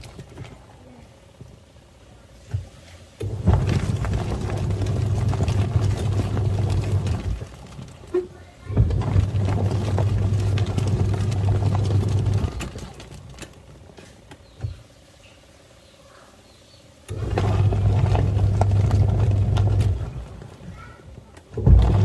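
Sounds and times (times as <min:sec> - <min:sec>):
washing machine motor humming: 0:03.2 - 0:14.8, 0:17.1 - 0:22.0.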